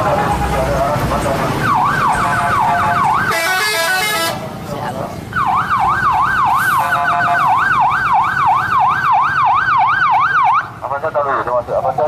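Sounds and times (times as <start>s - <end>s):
musical bus horn wailing: 2.6s - 4.5s.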